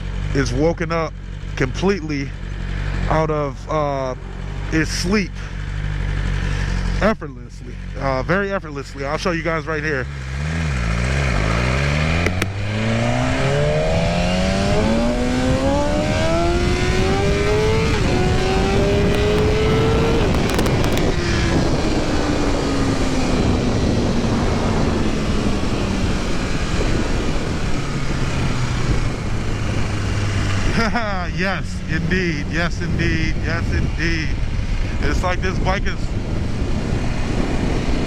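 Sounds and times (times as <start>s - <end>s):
motorcycle engine accelerating: 0.0s - 38.0s.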